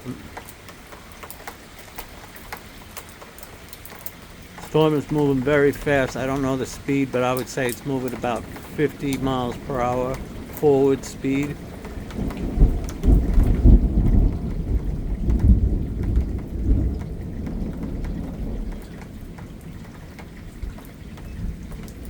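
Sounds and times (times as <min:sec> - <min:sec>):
rain falling: 0:00.0 - 0:22.0
thunder rumbling: 0:04.4 - 0:22.0.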